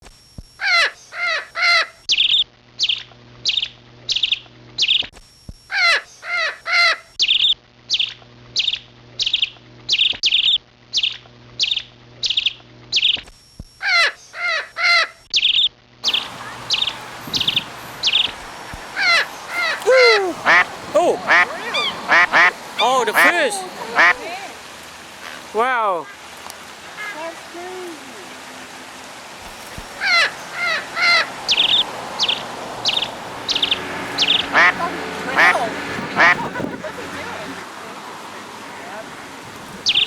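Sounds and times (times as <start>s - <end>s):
bird calling: 13.9s - 28.6s, 29.5s - 37.6s
steady rushing noise: 16.0s - 39.9s.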